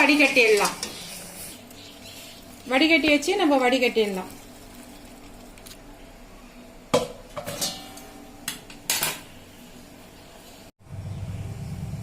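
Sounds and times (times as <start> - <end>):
metal utensils knocking on pot: 7.0 - 9.2.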